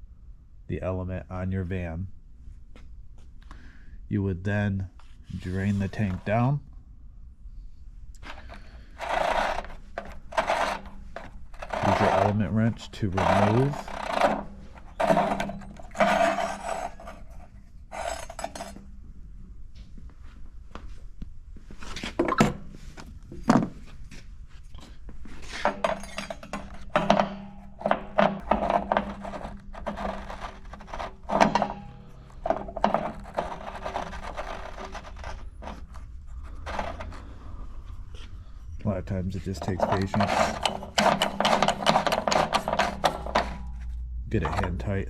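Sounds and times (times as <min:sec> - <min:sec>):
wrench clanking on metal: 0:08.2 - 0:17.3, 0:25.6 - 0:35.8, 0:39.6 - 0:43.8
wrench scraping: 0:08.2 - 0:18.8, 0:25.4 - 0:38.3, 0:39.3 - 0:45.0.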